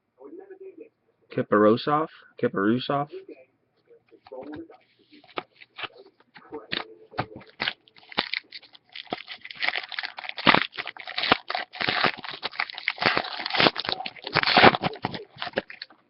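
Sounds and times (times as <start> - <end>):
wrapper crumpled and torn: 7.4 - 15.9.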